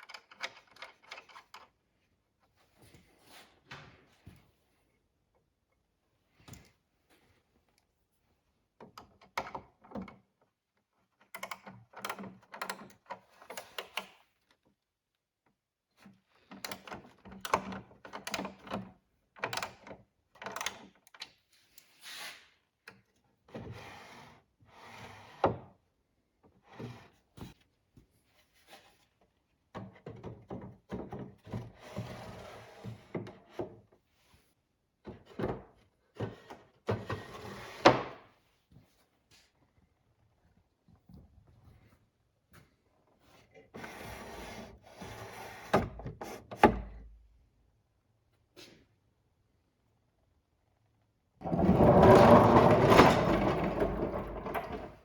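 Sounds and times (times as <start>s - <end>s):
wooden drawers knocking shut: 51.5s - 55.0s.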